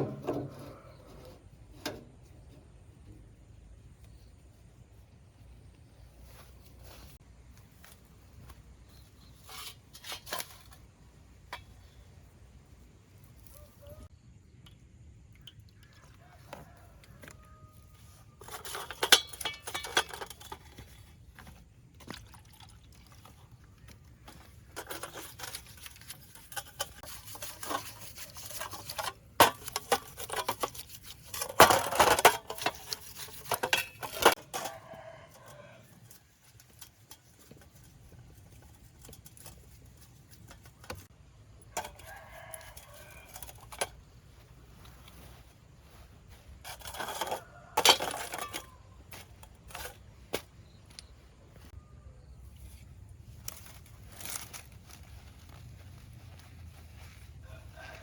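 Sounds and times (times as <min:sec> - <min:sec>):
rooster crowing: 0:15.8 - 0:18.3, 0:34.3 - 0:36.1, 0:41.8 - 0:43.4, 0:57.3 - 0:58.0
tools clicking and knocking: 0:18.4 - 0:20.9, 0:24.8 - 0:34.8.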